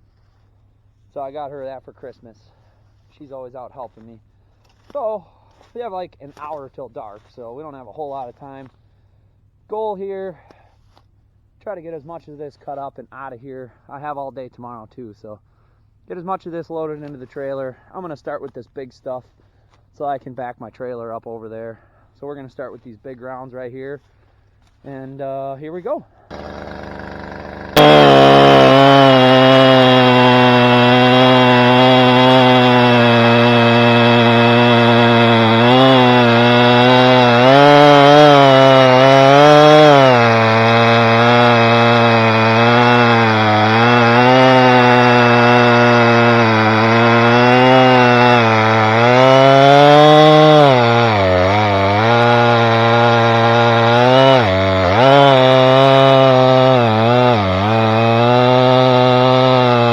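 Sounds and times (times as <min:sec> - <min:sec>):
chainsaw cutting wood: 0:04.3 - 0:07.4, 0:26.3 - 0:59.9.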